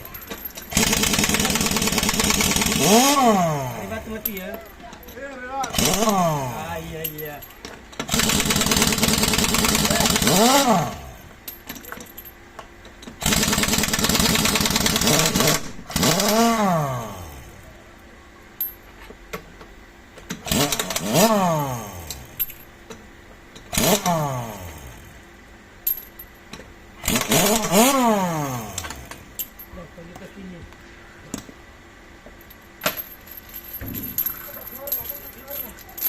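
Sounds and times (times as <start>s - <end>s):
impact wrench whine: 0.0s - 12.2s, 13.0s - 17.7s, 20.2s - 23.0s, 23.6s - 25.2s, 25.9s - 29.8s
impact wrench hammering: 0.3s - 4.4s, 5.7s - 6.6s.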